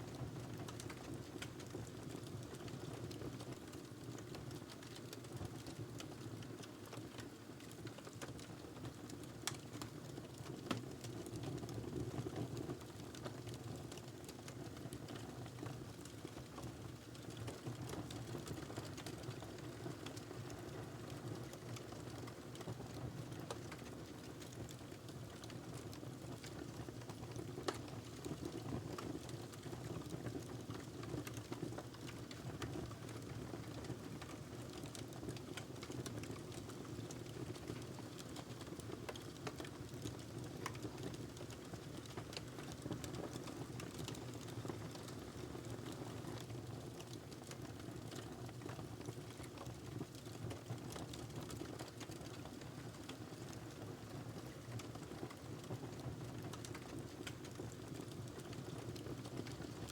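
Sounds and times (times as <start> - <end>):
wood fire crackling and popping: 0.3 - 59.9.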